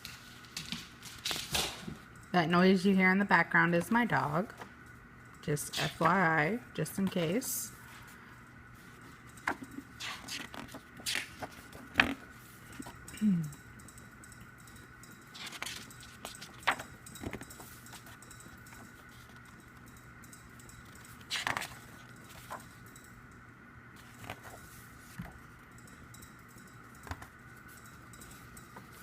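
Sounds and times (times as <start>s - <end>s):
faint steady hum: 0.0s - 29.0s
light clicks and jingly rattles: 25.7s - 29.0s.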